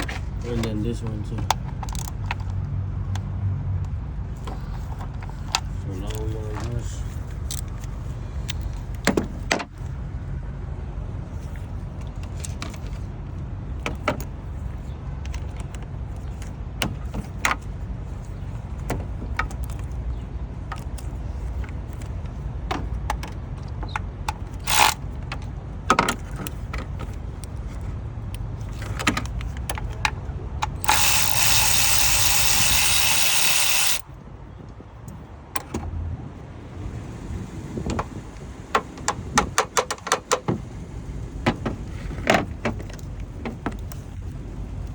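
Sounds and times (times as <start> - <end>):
socket wrench metallic clicks: 29.8 - 34.0.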